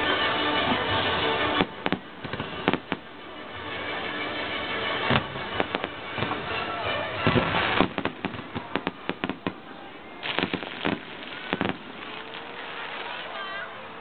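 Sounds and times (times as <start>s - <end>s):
fireworks bangs and crackles: 0.0s - 14.0s.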